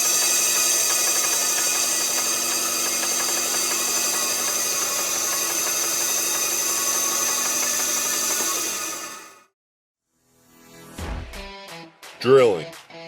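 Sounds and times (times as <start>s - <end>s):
high spindle whine: 0.0s - 9.4s
machine grinding cutting noise: 0.0s - 9.5s.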